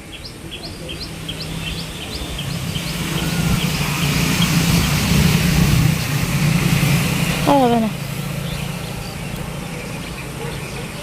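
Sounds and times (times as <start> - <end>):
small bird chirping: 0.0 - 6.3
vehicle engine approaching: 0.0 - 11.0.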